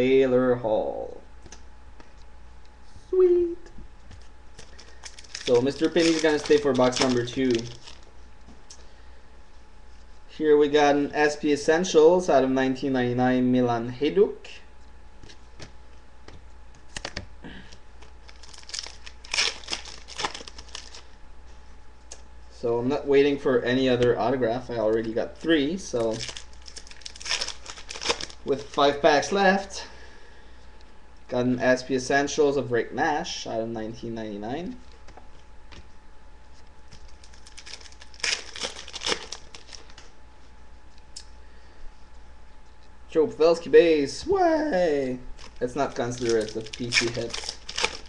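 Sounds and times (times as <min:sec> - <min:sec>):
foil wrapper crinkling: 0:04.6 - 0:08.1, 0:18.0 - 0:21.2, 0:24.9 - 0:29.0, 0:36.9 - 0:40.1, 0:45.3 - 0:48.0.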